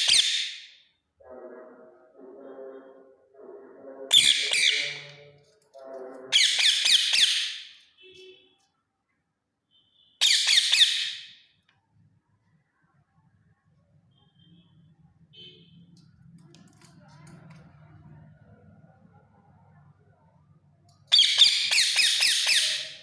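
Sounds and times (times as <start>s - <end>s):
parrot screeching: 4.1s - 5.2s, 6.3s - 7.8s, 10.2s - 11.4s, 21.1s - 23.0s
parrot chattering: 21.1s - 23.0s.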